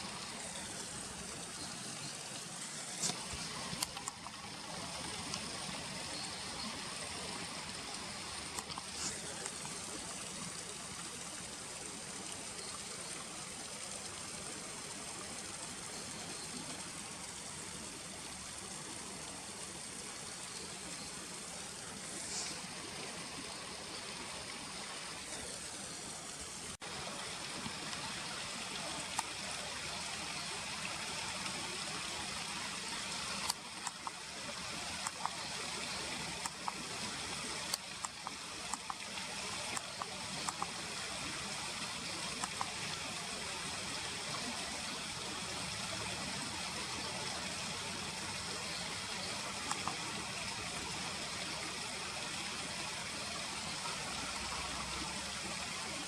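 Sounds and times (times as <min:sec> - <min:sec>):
flowing river water: 0:00.0 - 0:56.0
sharp clicks: 0:03.0 - 0:04.4, 0:33.3 - 0:34.2, 0:35.0 - 0:35.4, 0:37.6 - 0:39.1, 0:39.7 - 0:40.7, 0:42.4 - 0:42.8.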